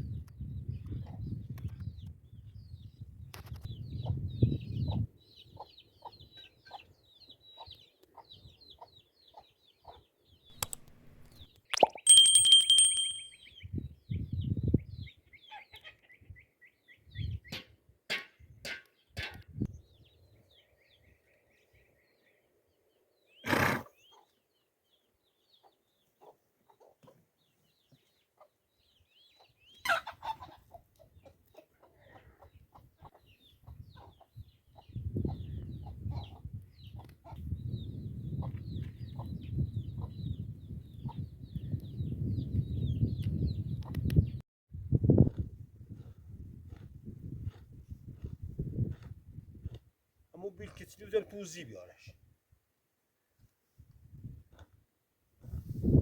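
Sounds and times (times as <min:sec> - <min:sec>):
chickens clucking: 0:25.6 - 0:27.2, 0:29.8 - 0:35.0.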